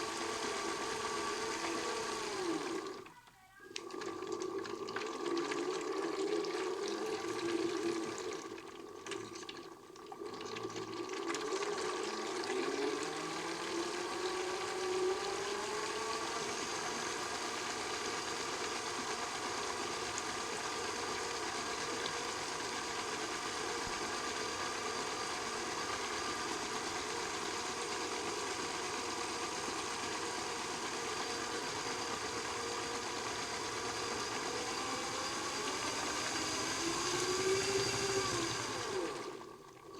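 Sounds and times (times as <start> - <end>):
small electric motor whirring: 0.0 - 3.2, 11.7 - 39.4.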